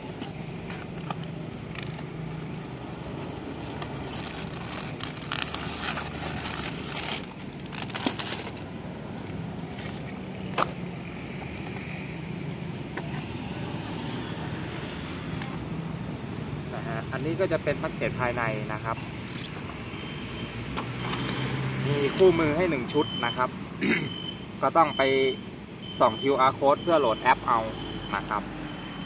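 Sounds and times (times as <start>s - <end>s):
cardboard and plastic packaging rustling: 3.4s - 8.7s.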